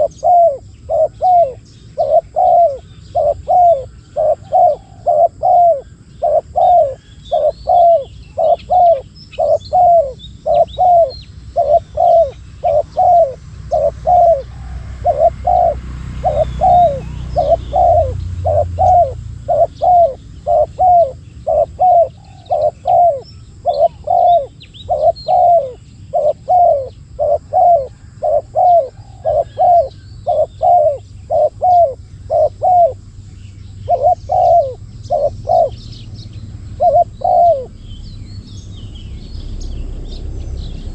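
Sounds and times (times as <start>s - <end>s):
dove cooing: 0.0s - 37.9s
small birds chirping faintly: 0.0s - 40.9s
low rumble: 35.7s - 40.9s.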